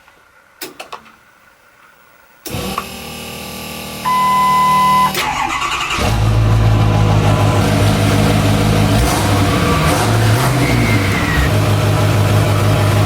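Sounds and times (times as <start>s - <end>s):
diesel engine starting and running: 2.4s - 13.0s
steady beep: 4.1s - 5.2s
steady mechanical hum: 6.0s - 13.0s.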